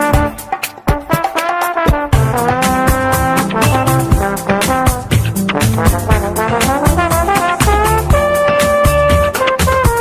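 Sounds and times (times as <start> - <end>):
steady drum beat: 0.0 - 10.0
brass holding a long note: 2.2 - 9.3.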